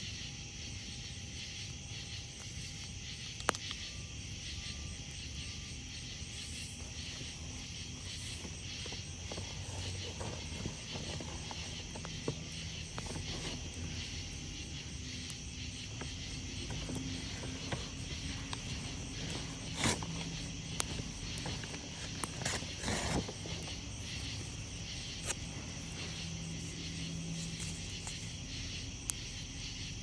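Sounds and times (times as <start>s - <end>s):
night insects chorus: 0.0s - 30.0s
wood fire crackling and popping: 6.6s - 26.0s.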